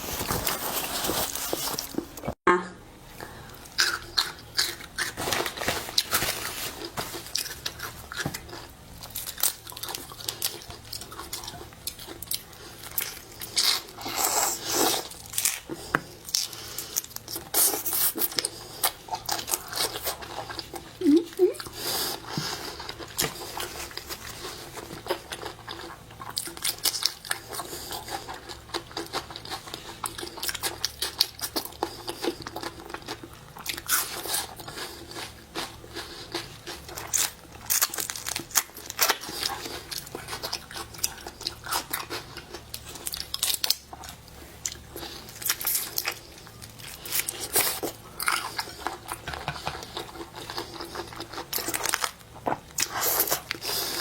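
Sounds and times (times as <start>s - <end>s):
crunching and chewing food: 0.0s - 2.4s, 3.2s - 54.0s.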